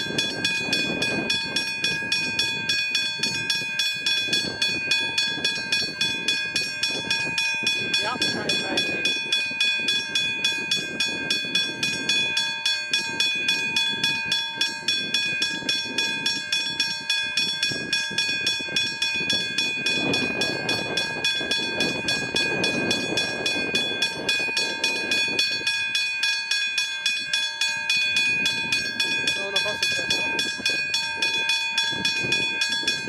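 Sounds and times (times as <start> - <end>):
level crossing bell ringing: 0.0 - 33.0
train rumbling past: 10.9 - 26.0.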